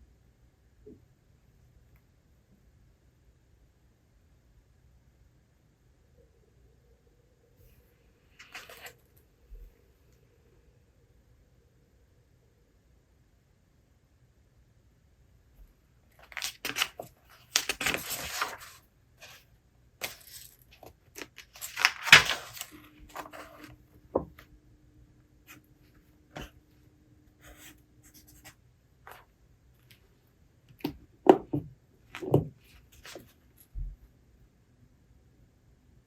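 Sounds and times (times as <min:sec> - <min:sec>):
book pages rustling: 0:08.4 - 0:09.0, 0:16.2 - 0:19.4, 0:20.0 - 0:24.3.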